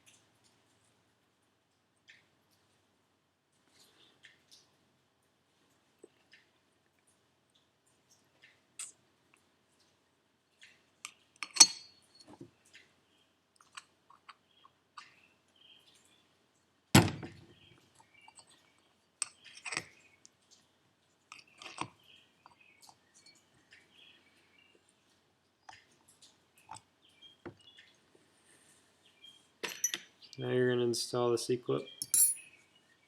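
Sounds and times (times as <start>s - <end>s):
small metal parts clinking: 29.6s - 30.1s, 32.0s - 32.5s.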